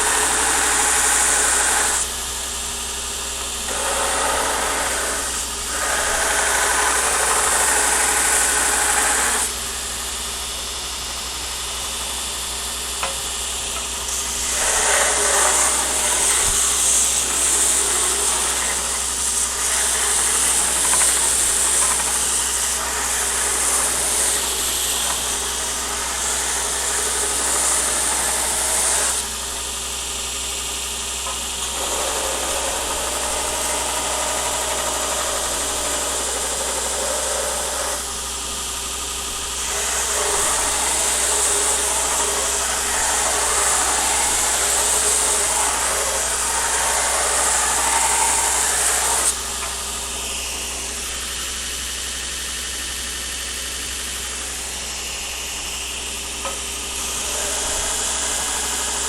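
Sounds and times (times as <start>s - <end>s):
shop machinery humming: 0.0s - 59.0s
loud hissing noise: 38.7s - 59.0s.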